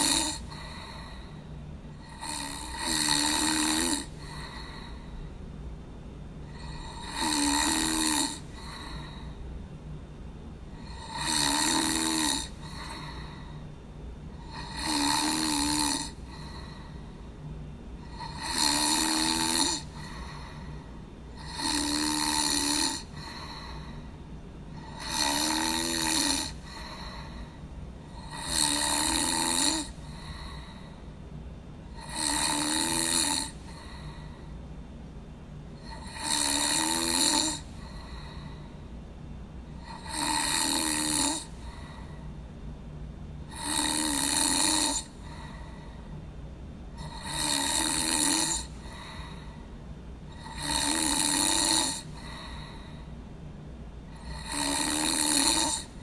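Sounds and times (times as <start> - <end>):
person snoring: 0.0 - 5.2, 6.5 - 9.4, 10.8 - 13.6, 14.3 - 17.1, 18.0 - 24.1, 24.7 - 31.0, 31.9 - 34.5, 35.8 - 38.7, 39.8 - 42.2, 43.5 - 46.0, 47.0 - 49.7, 50.3 - 53.1, 54.1 - 56.0.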